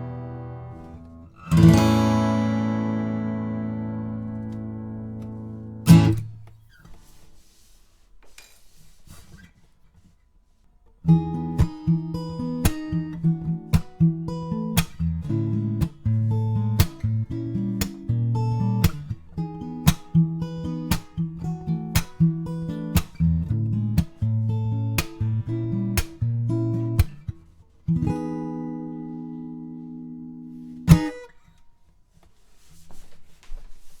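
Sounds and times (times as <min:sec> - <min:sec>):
acoustic guitar chord ringing: 0:00.0 - 0:06.4
acoustic guitar strumming: 0:00.0 - 0:06.8, 0:11.1 - 0:27.3, 0:27.9 - 0:31.4.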